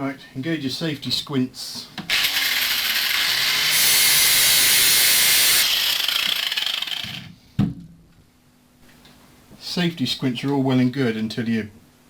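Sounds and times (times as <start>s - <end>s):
grinder grinding metal: 2.1s - 7.2s.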